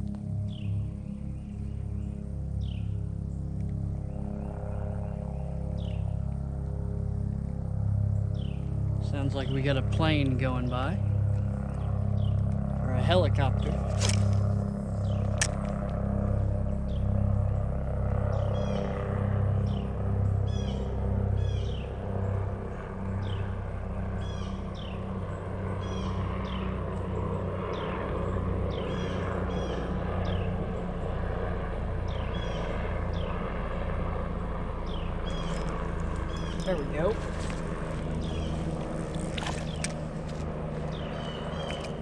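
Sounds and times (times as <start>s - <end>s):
aircraft drone overhead: 0.0s - 42.0s
bird chirps: 34.9s - 40.0s, 40.8s - 42.0s.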